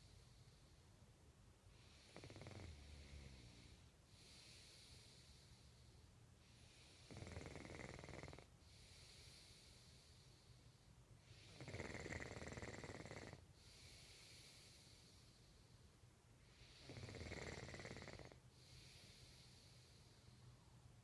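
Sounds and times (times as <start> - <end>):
soft breaths: 0.0 - 21.0
person snoring: 1.8 - 5.2, 6.7 - 9.6, 11.3 - 14.8, 16.6 - 20.0.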